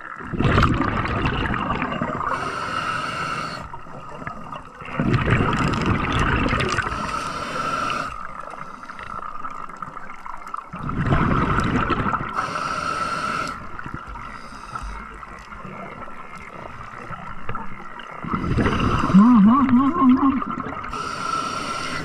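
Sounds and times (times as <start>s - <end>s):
exhaled bubbles underwater: 0.0s - 22.0s
regulator inhalation hiss: 2.3s - 3.8s, 6.8s - 9.2s, 12.4s - 15.2s, 20.9s - 22.0s.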